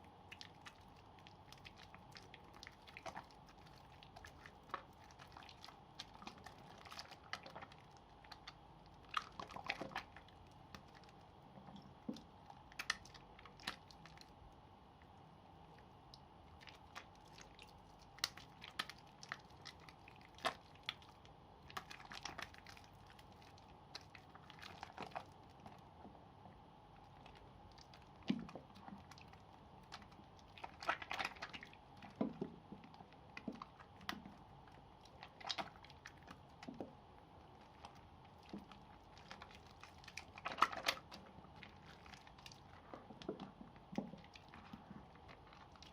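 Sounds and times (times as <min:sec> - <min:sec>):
faint steady hum: 0:00.0 - 0:45.9
wet soap squished by hand: 0:00.1 - 0:26.0, 0:26.9 - 0:45.9.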